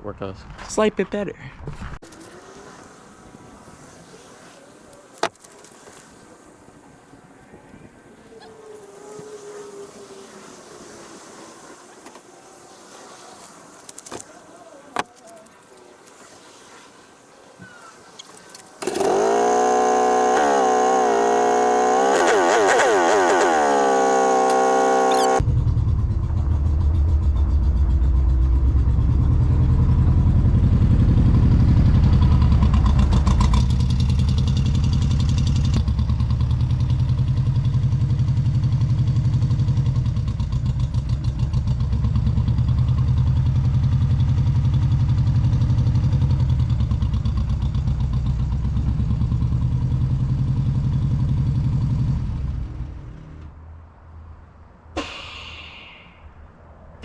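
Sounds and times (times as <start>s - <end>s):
vehicle engine revving high: 18.8s - 25.4s
engine rumbling at low speed: 18.8s - 54.8s.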